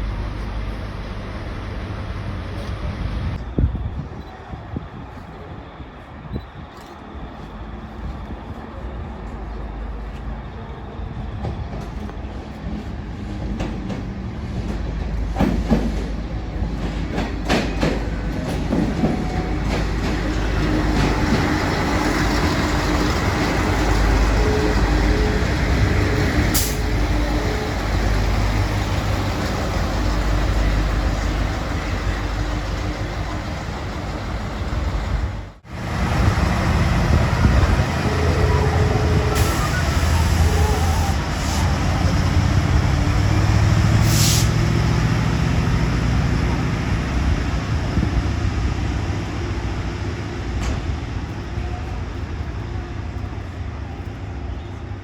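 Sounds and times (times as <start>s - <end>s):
train rumble and hum: 0.0s - 55.0s
train wheels clicking over rail joints: 11.3s - 35.4s.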